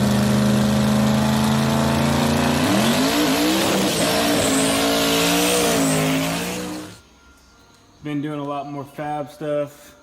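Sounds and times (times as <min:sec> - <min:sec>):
car engine revving: 0:00.0 - 0:07.0.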